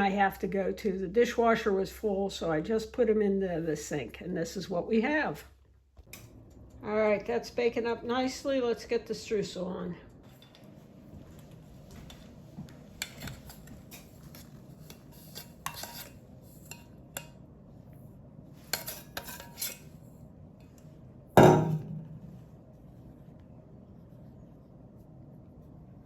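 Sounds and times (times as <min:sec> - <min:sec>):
utensil scraping a baking pan: 0:13.0 - 0:17.3, 0:18.5 - 0:20.1.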